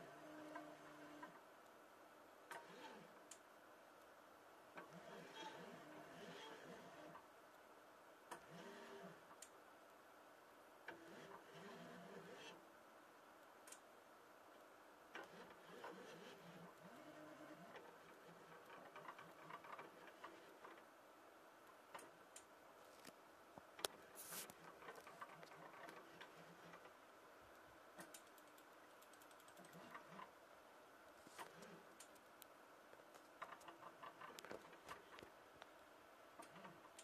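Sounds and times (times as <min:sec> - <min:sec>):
mechanical clicks: 0:28.0 - 0:30.3.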